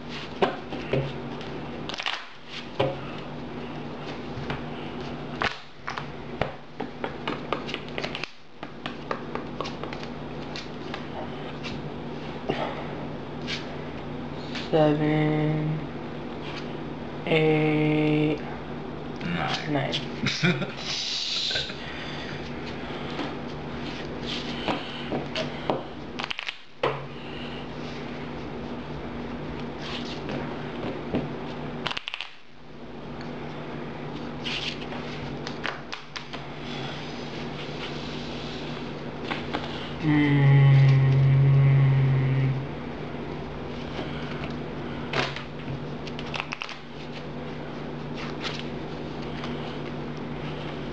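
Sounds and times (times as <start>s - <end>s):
steady low hum: 0.0s - 50.9s
cards clicking and tapping on table: 5.4s - 10.1s.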